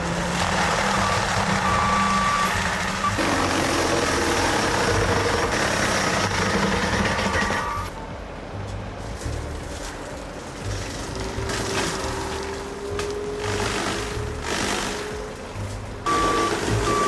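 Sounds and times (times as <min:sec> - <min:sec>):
heavy vehicle engine running: 0:00.0 - 0:17.0.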